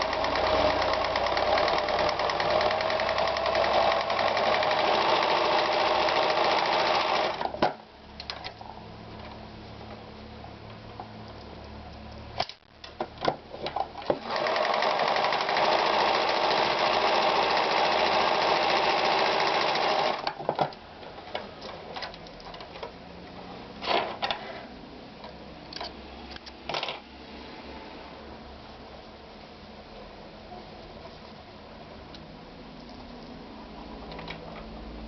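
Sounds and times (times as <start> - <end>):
sewing machine running: 0.0 - 7.5, 14.2 - 20.3.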